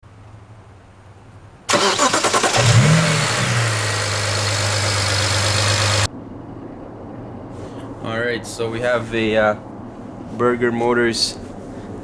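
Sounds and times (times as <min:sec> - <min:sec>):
car engine starting and idling: 0:01.7 - 0:06.1
starter motor cranking: 0:01.7 - 0:06.1.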